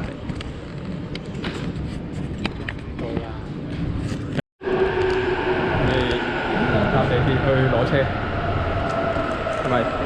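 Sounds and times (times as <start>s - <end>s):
low rumble: 4.6s - 10.0s.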